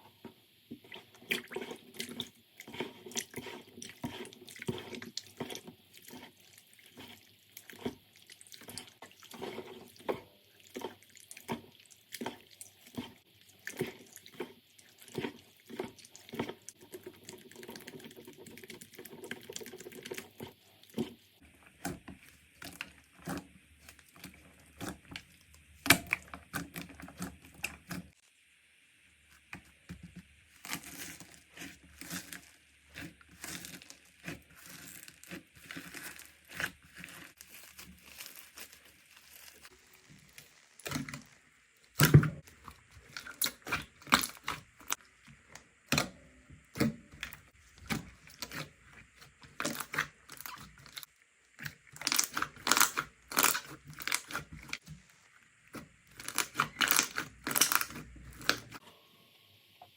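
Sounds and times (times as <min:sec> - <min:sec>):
slime squishing and popping: 0:46.7 - 0:54.9, 0:55.7 - 0:58.8.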